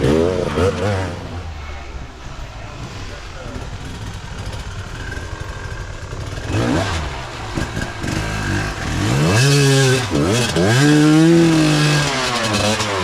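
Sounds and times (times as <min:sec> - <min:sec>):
dirt bike engine revving: 0:00.0 - 0:13.0.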